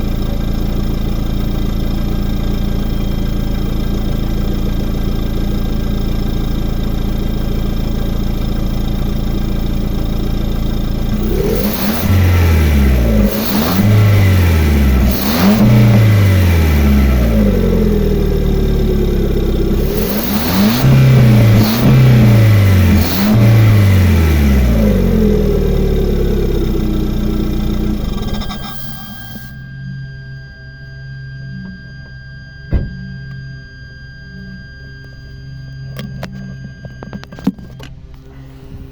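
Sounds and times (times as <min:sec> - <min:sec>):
car engine idling and revving: 0:00.0 - 0:29.6
sharp knock: 0:32.7 - 0:33.0.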